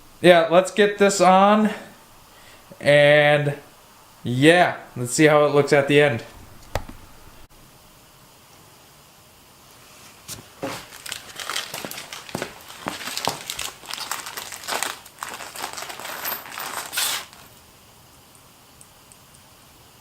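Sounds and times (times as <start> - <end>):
packaging crinkling: 10.6 - 17.6.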